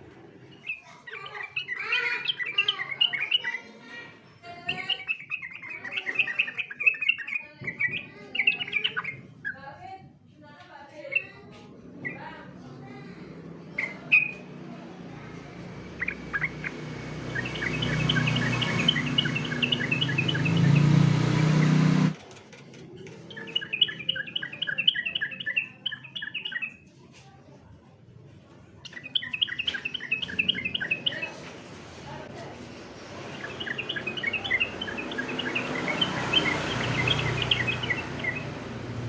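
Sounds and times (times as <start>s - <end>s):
bird chattering song: 0.5s - 3.8s, 4.5s - 9.7s, 11.0s - 11.4s, 13.8s - 14.5s, 15.4s - 22.0s, 23.0s - 26.8s, 28.8s - 31.4s, 32.8s - 38.8s.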